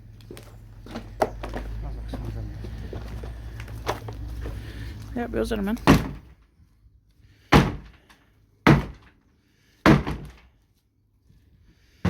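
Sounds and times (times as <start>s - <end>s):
sharp knocks on wood: 9.9s - 10.4s.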